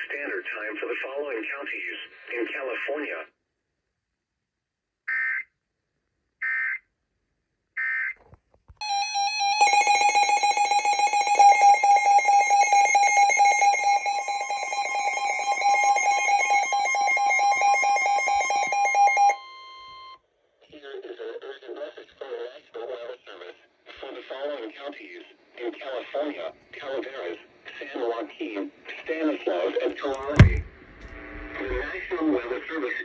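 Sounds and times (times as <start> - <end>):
loud steady alarm tone: 8.8 - 20.2, 30.2 - 32.1.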